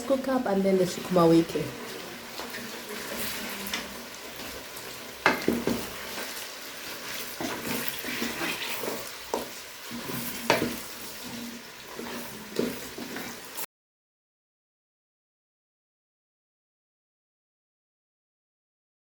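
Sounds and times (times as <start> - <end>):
food sizzling in a pot: 0.0 - 13.7
spoon stirring food in a pot: 0.2 - 13.6.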